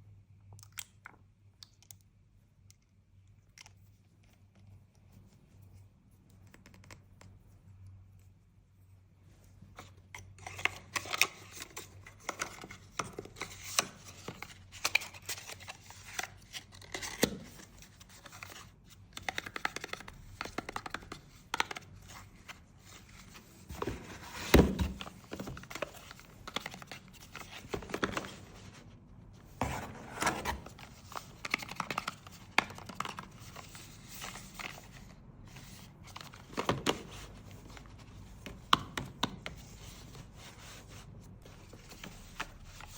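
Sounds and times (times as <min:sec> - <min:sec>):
packaging being handled: 0:29.6 - 0:35.0.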